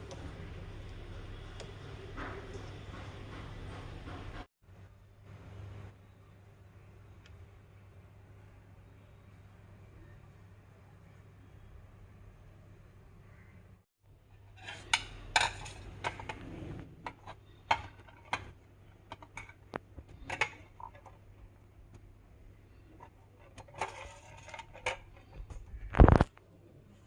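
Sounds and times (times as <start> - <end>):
kitchen items clinking and knocking: 14.4 - 21.4, 22.8 - 26.2.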